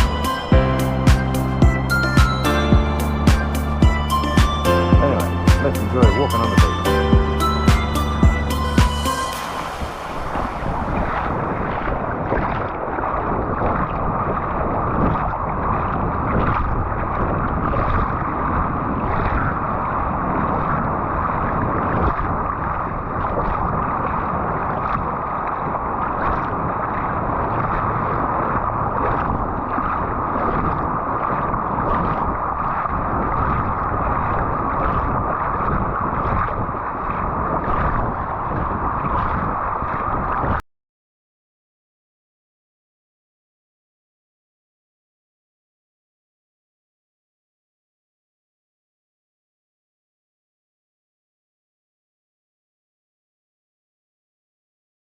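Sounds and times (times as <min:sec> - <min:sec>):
surf on a beach: 0:00.0 - 0:40.6
wind: 0:00.0 - 0:40.6.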